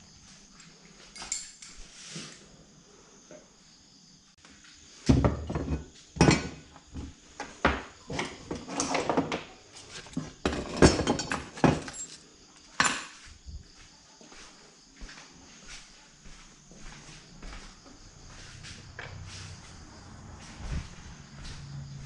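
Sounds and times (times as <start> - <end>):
metal parts and tools clinking: 1.1 - 1.9, 10.0 - 12.2.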